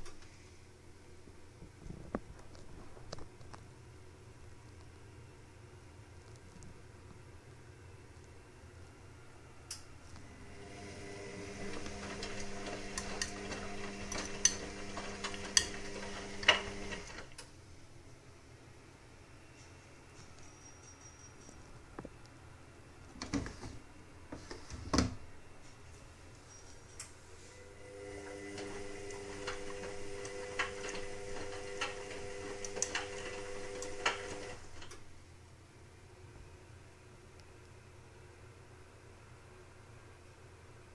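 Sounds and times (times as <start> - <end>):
washing machine humming: 10.2 - 17.4, 27.5 - 35.1
washing machine clicking: 10.7 - 17.5, 28.1 - 35.0.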